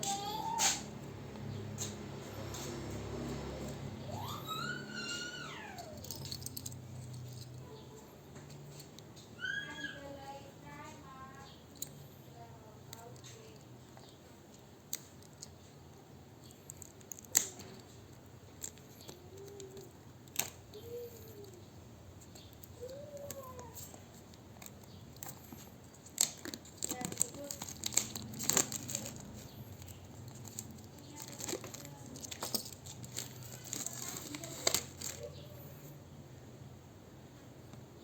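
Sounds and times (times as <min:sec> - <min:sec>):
packaging crinkling and tearing: 0:24.6 - 0:35.5.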